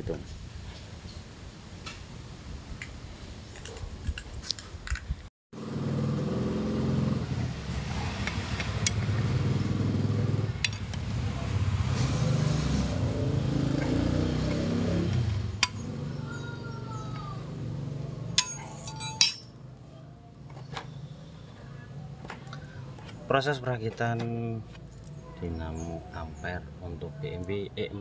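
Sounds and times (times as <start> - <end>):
vehicle engine running: 5.6 - 18.8
sharp metallic clinks: 18.3 - 19.6.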